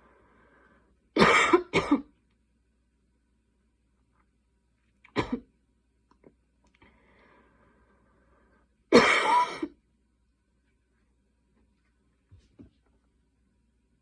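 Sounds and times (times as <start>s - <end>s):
faint breath: 0.0s - 1.0s, 6.8s - 8.8s
girl coughing: 1.2s - 2.1s, 5.2s - 5.5s, 8.9s - 9.8s.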